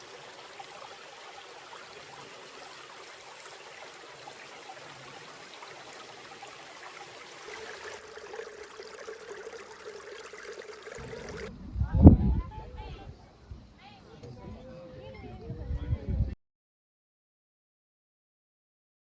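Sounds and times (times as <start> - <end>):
water running over rocks: 0.0 - 11.5.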